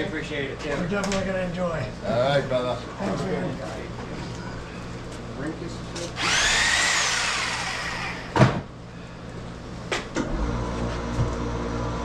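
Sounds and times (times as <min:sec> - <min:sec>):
door banging shut: 0:08.3 - 0:08.7.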